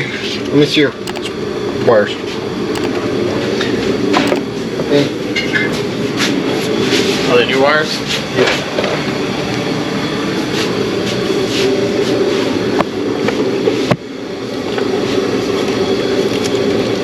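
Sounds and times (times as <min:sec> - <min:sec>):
sharp clicks: 0:01.1 - 0:01.4, 0:02.8 - 0:03.0, 0:04.3 - 0:04.6.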